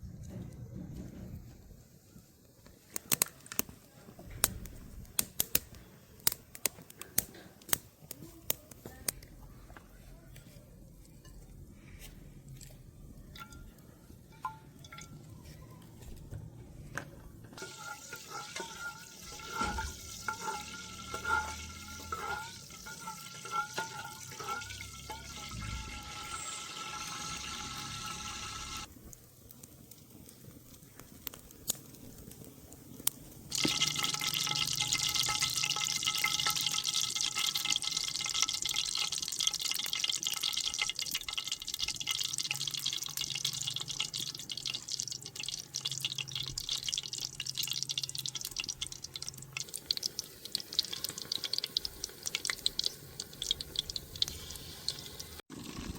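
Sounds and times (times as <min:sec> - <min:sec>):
meat sizzling in hot oil: 0:17.6 - 0:55.9.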